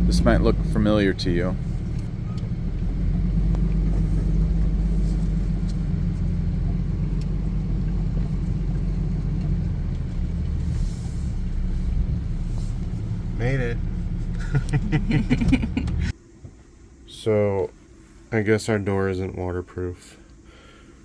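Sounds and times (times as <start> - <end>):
diesel engine rumbling under load: 0.0 - 16.2.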